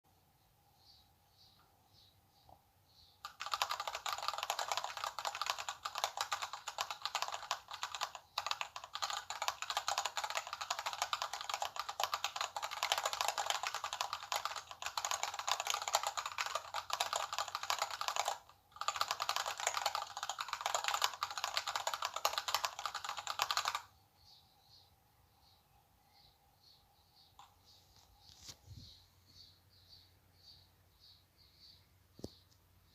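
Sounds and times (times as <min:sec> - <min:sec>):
fast typing on keyboard: 0:03.2 - 0:23.9.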